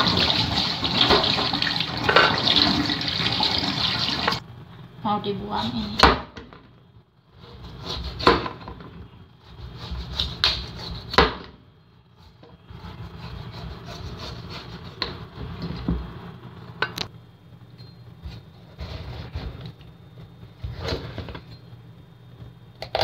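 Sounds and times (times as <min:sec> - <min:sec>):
knife scraping pumpkin: 0:07.4 - 0:08.4, 0:09.4 - 0:11.2, 0:12.2 - 0:15.1, 0:18.2 - 0:19.8.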